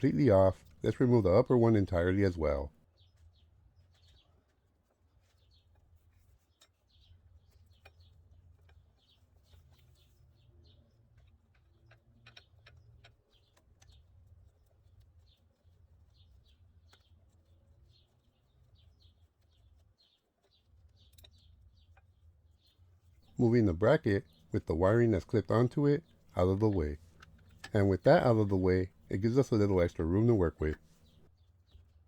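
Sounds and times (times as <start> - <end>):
faint birds chirping: 0.0 - 32.0
low steady hum: 23.2 - 31.3.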